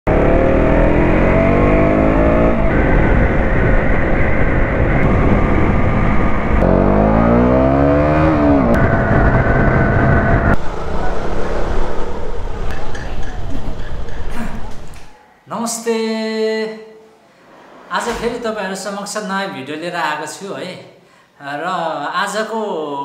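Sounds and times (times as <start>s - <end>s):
motorcycle engine accelerating: 0.1s - 15.0s
wind buffeting microphone: 2.4s - 6.7s, 8.0s - 15.1s.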